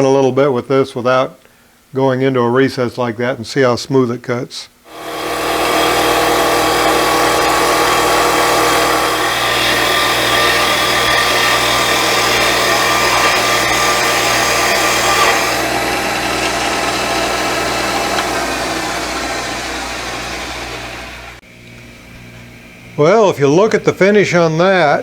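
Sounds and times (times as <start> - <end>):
hiss of cutting wood: 4.9 - 21.4
lathe motor hum: 4.9 - 21.4.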